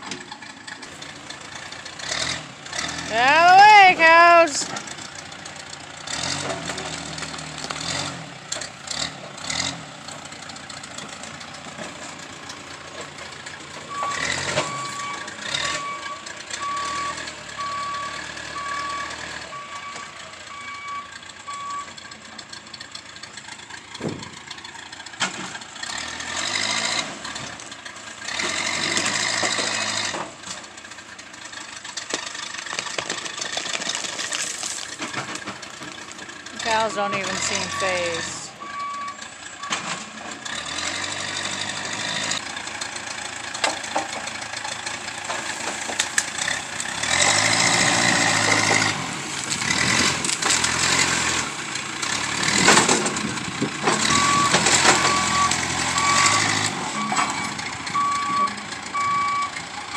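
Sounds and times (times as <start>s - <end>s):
tractor engine running: 0.0s - 59.9s
reversing alarm beeping: 13.9s - 22.1s, 36.6s - 39.8s, 54.1s - 59.9s
knocks and clanks: 23.9s - 24.5s, 52.5s - 55.3s.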